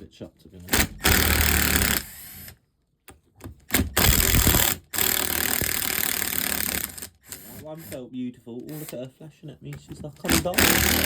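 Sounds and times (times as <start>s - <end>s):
impact driver hammering bolts: 0.7s - 2.1s, 3.6s - 7.9s, 10.2s - 11.0s.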